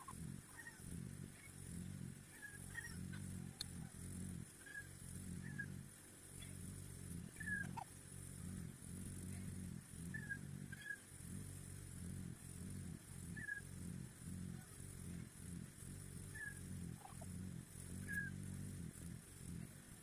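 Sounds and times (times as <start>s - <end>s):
low uneven murmur: 0.0s - 20.0s
chicks cheeping: 7.4s - 7.8s.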